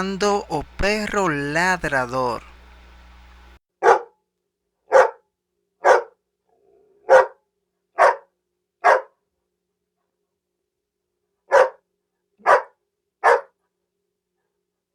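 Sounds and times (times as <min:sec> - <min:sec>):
dog barking: 0:05.8 - 0:06.1, 0:07.1 - 0:07.4, 0:08.0 - 0:09.1, 0:11.5 - 0:11.8, 0:12.5 - 0:13.5.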